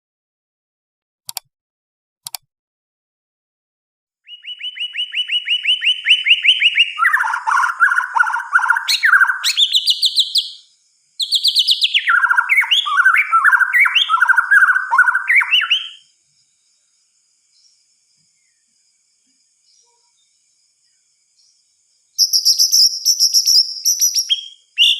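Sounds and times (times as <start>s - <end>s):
faint clicks: 2.2s - 2.4s
bird singing whistled phrases: 4.2s - 16.1s, 22.2s - 24.9s.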